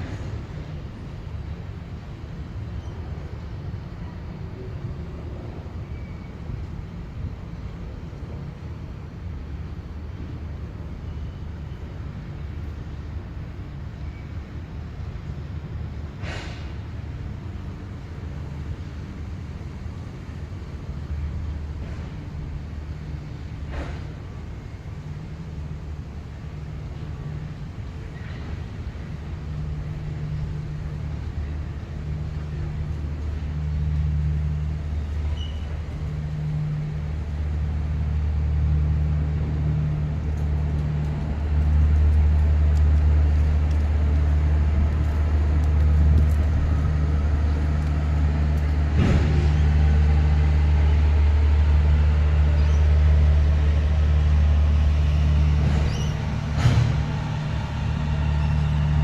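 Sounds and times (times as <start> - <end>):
diesel locomotive engine drone: 0.0 - 59.0.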